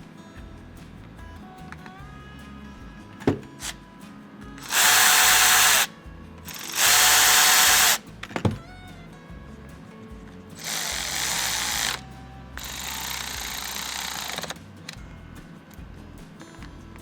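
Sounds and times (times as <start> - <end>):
power tool bursts: 4.6 - 5.9, 6.5 - 8.6, 10.6 - 12.0, 12.6 - 14.6.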